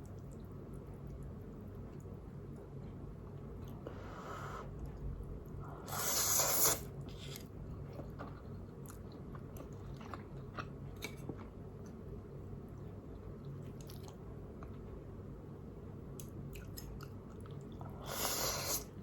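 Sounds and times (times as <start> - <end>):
person chewing noodles: 5.7 - 12.0, 13.1 - 14.8.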